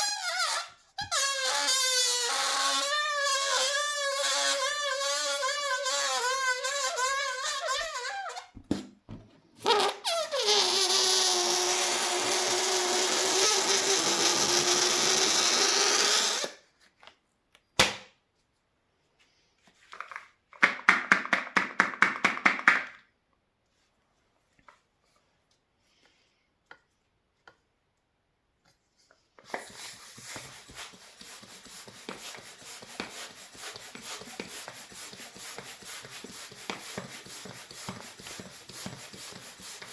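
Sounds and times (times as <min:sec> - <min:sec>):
balloon letting out air: 0:09.6 - 0:16.6
balloon neck fluttering: 0:09.6 - 0:16.6.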